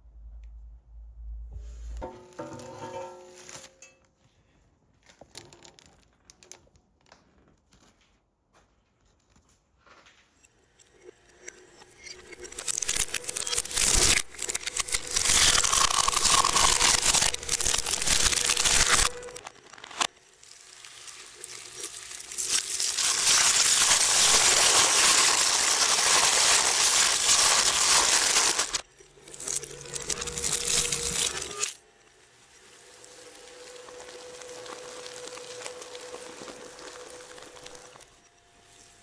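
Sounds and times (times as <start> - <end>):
shredder crushing material: 12.1 - 39.0.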